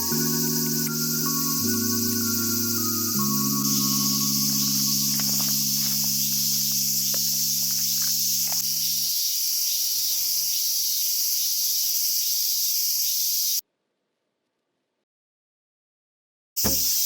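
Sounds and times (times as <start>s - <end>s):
low steady hum: 0.0s - 9.1s
insects chirping: 0.0s - 13.6s, 16.6s - 17.0s.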